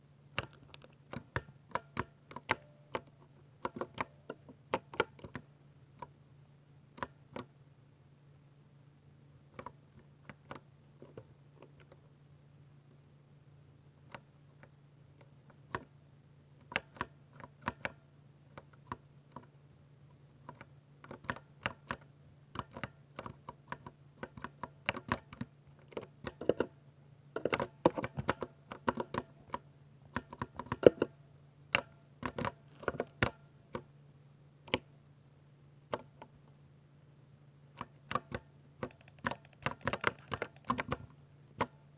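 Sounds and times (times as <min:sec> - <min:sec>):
mechanical keyboard typing: 0:38.3 - 0:41.0.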